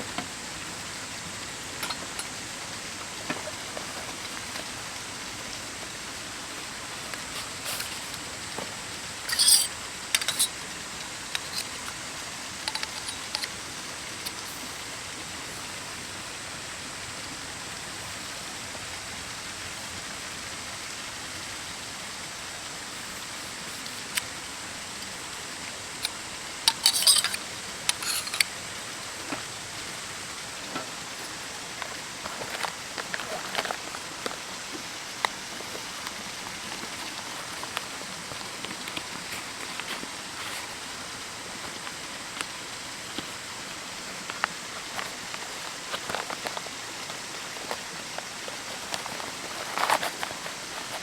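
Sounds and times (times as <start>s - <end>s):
rain hissing: 0.0s - 51.0s
light clinks: 9.3s - 12.0s, 12.6s - 13.5s, 26.0s - 28.5s.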